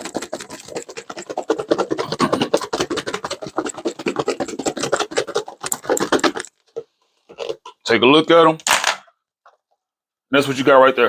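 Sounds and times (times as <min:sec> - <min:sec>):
food shaken in closed container: 0:00.0 - 0:06.7.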